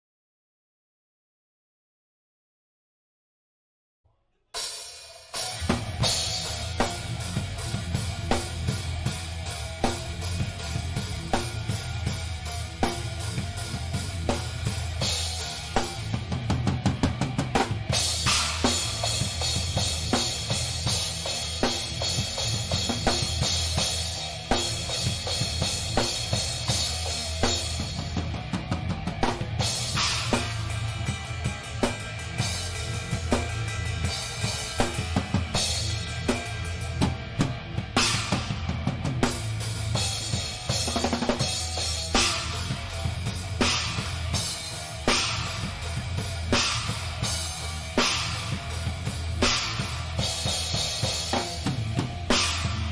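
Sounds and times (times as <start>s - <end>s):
drum kit: 4.6s - 52.9s
rock band playing live: 5.3s - 52.9s
low bass: 5.7s - 52.9s.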